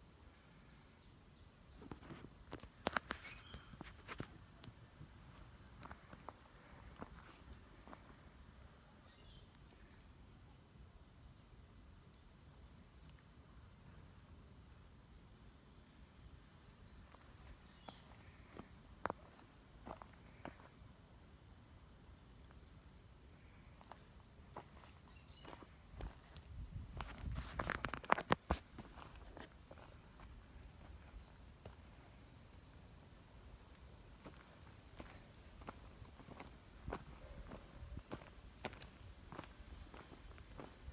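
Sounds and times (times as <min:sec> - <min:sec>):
high-pitched insect chorus: 0:00.0 - 0:40.9
faint footfalls on a trail: 0:01.8 - 0:08.2, 0:17.8 - 0:20.8, 0:23.7 - 0:32.1, 0:33.6 - 0:40.9.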